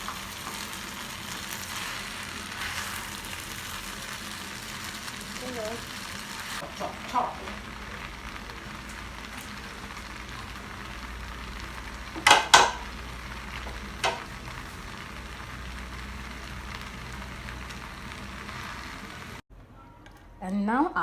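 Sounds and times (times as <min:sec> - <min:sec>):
food sizzling in a pan: 0:00.0 - 0:19.4
utensil clanking against pan: 0:12.2 - 0:13.0, 0:13.6 - 0:14.3.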